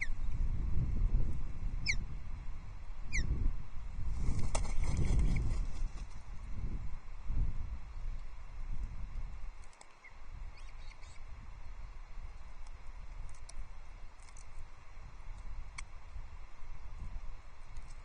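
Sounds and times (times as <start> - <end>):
wind buffeting microphone: 0.0 - 9.6.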